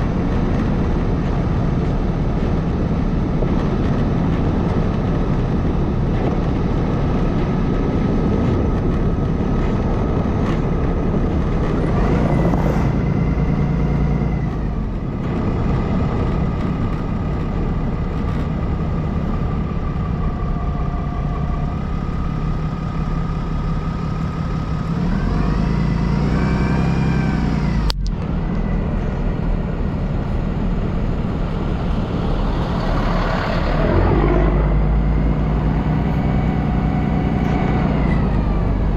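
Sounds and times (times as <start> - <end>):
vehicle engine and road noise: 0.0 - 38.9
vehicle passing: 10.2 - 15.0, 24.8 - 38.9.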